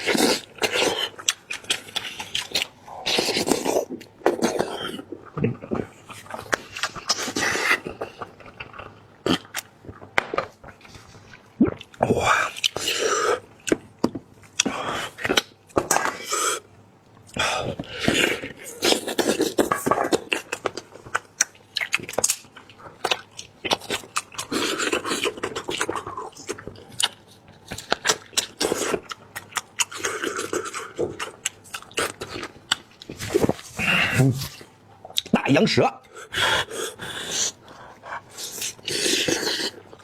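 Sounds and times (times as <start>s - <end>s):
wet chewing and lip-smacking: 0.0s - 13.0s, 17.1s - 33.6s.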